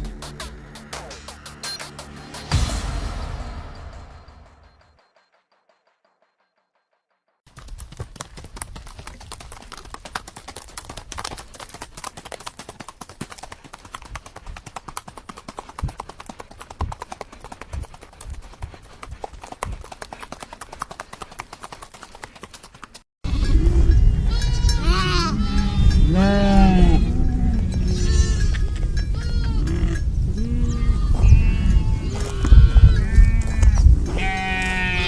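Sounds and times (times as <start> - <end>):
horse hoofbeats clip-clopping: 7.5 - 23.0.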